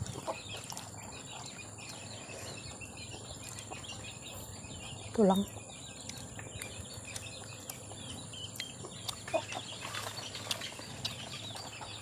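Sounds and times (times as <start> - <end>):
birds chirping: 0.0 - 12.0.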